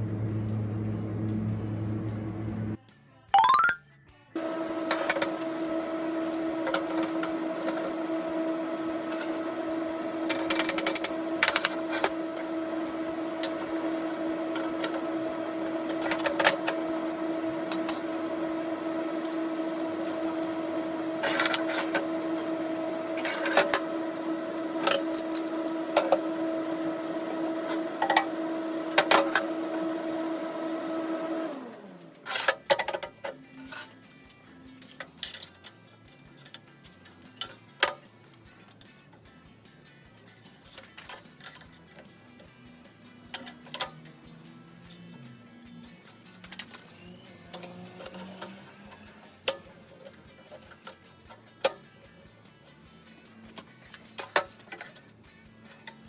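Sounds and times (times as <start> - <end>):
power tool motor running: 4.4 - 32.3, 46.4 - 49.3.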